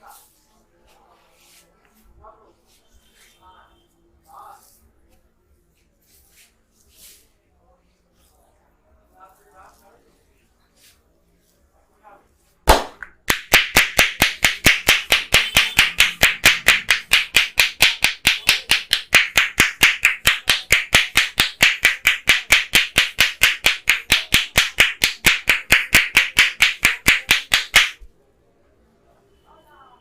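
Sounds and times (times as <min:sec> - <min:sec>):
hands slapping in fast rhythm: 0:12.6 - 0:28.1.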